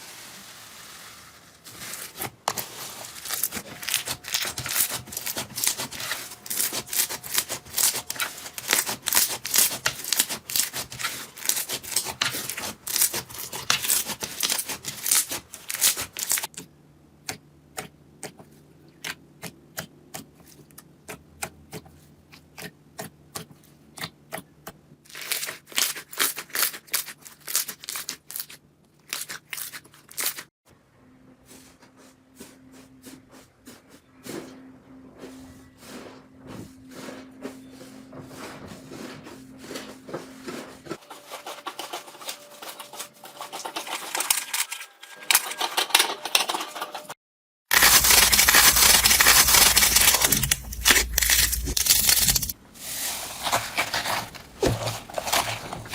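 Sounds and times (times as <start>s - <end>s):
slime crackling and popping: 47.7s - 52.5s.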